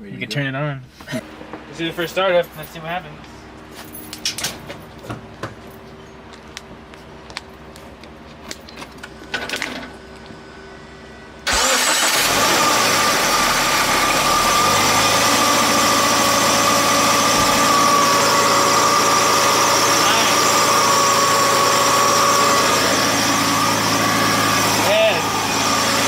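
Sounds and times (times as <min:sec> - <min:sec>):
steady whine: 0:01.1 - 0:26.0
car engine idling: 0:09.9 - 0:26.0.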